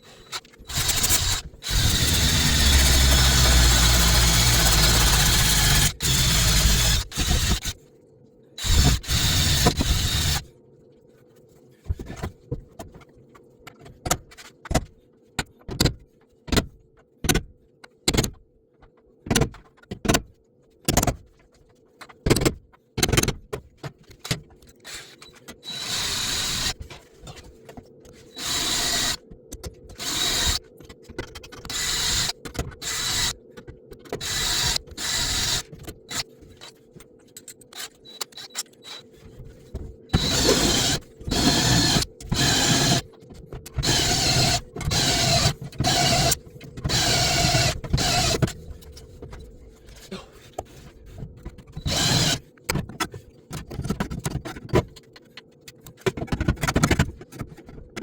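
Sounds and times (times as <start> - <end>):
sharp clicks and knocks: 51.4 - 58.0.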